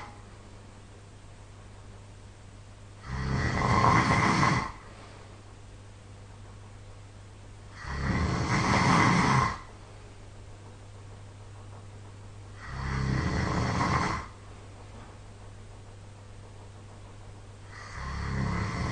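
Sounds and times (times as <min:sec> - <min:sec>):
faint low hum: 0:00.0 - 0:18.9
person snoring: 0:03.0 - 0:04.9, 0:07.7 - 0:09.7, 0:12.5 - 0:14.4, 0:17.7 - 0:18.9.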